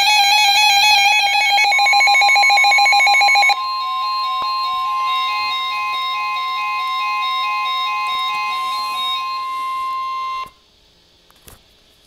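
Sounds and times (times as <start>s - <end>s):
steady high alarm tone: 0.0s - 10.6s
electronic beeping stepping melody: 1.6s - 10.5s.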